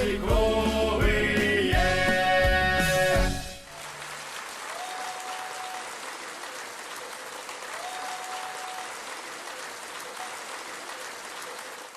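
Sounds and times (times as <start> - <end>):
audience applauding: 3.5 - 11.9.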